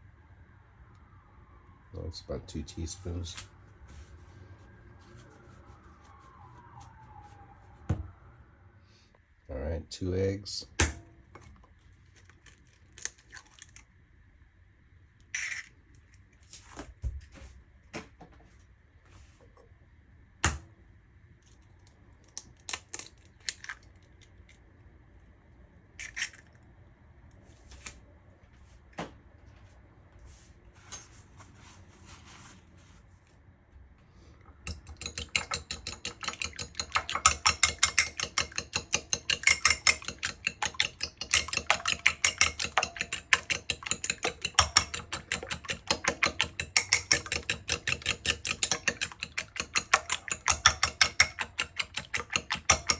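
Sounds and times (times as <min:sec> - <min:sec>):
kitchenware knocks and clicks: 0:34.7 - 0:52.9
utensil beating eggs in a bowl: 0:34.7 - 0:52.9.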